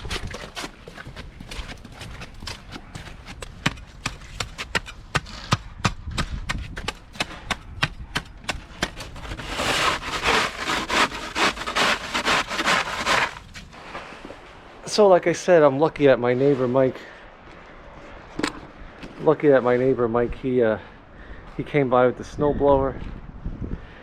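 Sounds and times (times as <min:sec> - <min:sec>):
continuous crunching and scraping: 0:00.0 - 0:23.3
footsteps crunching in snow: 0:09.1 - 0:14.4.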